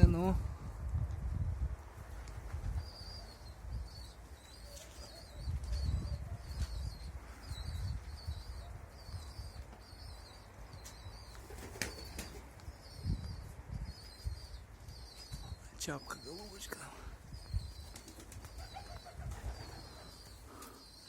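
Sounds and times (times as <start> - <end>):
gusty wind on microphone: 0.0 - 4.1, 5.4 - 9.6, 12.7 - 15.6, 17.1 - 17.9, 18.5 - 20.0
small bird chirping: 2.8 - 21.0.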